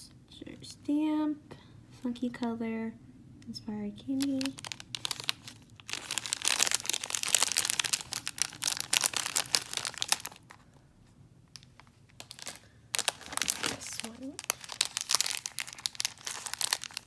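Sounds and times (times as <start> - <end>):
candy packaging crinkling: 4.2 - 10.8, 11.6 - 17.0.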